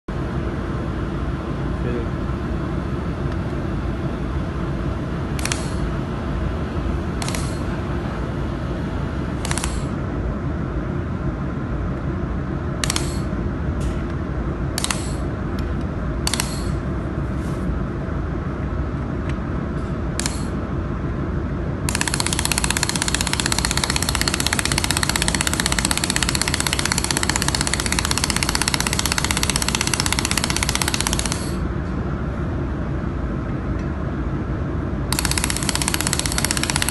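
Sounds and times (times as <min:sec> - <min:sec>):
low machine hum: 0:00.1 - 0:36.9
sharp laser welding bursts: 0:05.4 - 0:05.8, 0:07.2 - 0:07.7, 0:09.4 - 0:10.0, 0:12.8 - 0:13.3, 0:14.8 - 0:15.2, 0:16.3 - 0:16.8, 0:20.2 - 0:20.6, 0:21.9 - 0:31.6, 0:35.1 - 0:36.9.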